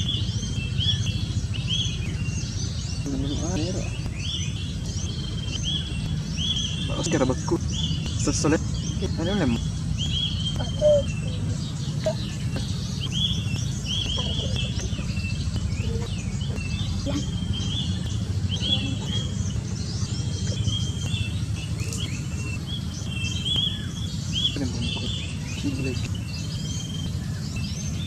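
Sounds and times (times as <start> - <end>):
small birds chirping: 0.0 - 28.0
steady low hum: 0.0 - 28.0.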